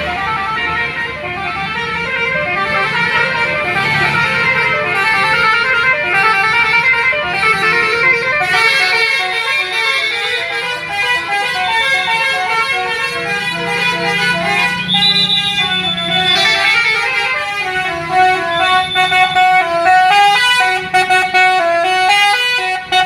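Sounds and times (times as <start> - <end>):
bus musical horn melody: 0.0 - 23.0.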